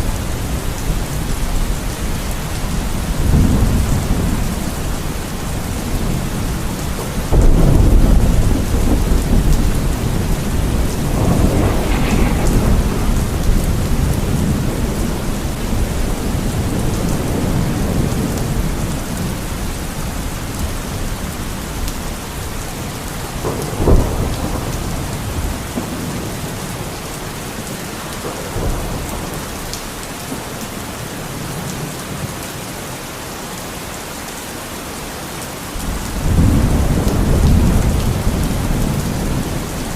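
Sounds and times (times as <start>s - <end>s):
steady rain: 0.0s - 39.9s
thunder rolling: 2.8s - 19.7s, 23.2s - 26.9s, 35.8s - 39.9s
sharp thunder crack: 7.3s - 18.1s.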